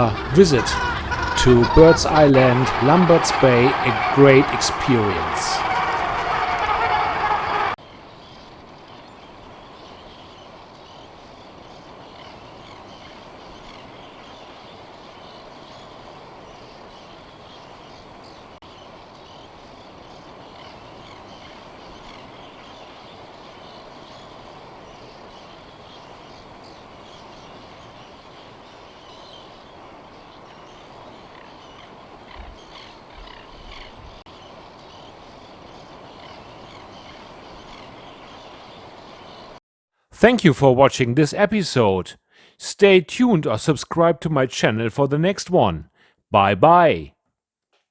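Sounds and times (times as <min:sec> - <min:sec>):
seabird colony calling: 0:00.0 - 0:07.8.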